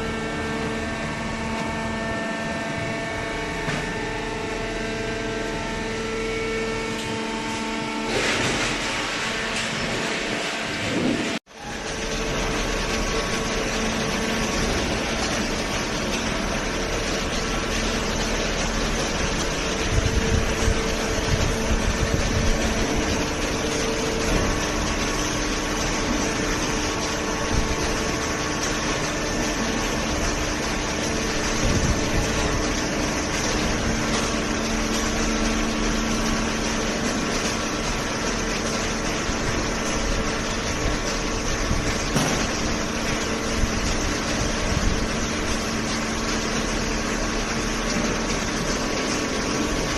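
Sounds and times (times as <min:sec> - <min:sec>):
electric motor and pump humming: 0:00.0 - 0:49.9.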